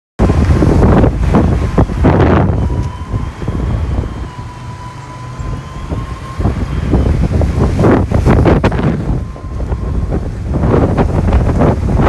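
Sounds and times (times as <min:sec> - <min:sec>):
storm wind buffeting microphone: 0:00.2 - 0:12.0
thin steady whistle: 0:01.4 - 0:10.8.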